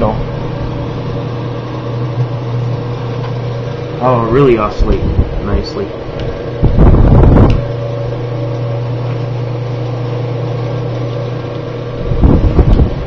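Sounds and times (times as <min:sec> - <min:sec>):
electric fan motor hum: 0:00.0 - 0:13.0
rush of air from fan: 0:00.0 - 0:13.0.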